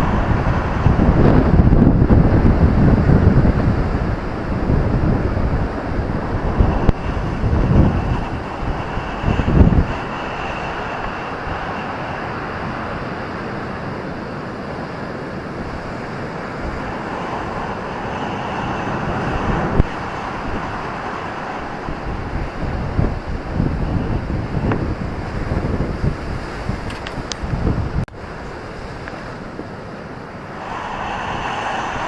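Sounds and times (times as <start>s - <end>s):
surf breaking on a beach: 0.0s - 32.0s
wind buffeting microphone: 0.0s - 32.0s.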